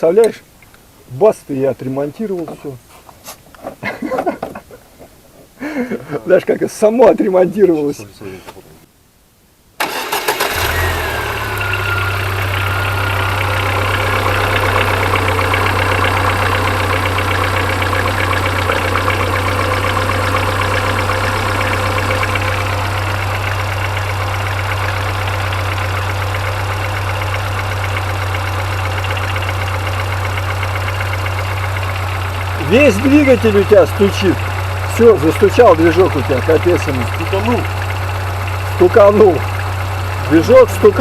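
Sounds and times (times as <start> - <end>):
car engine idling: 9.8 - 41.0
short falling whine: 11.2 - 24.5.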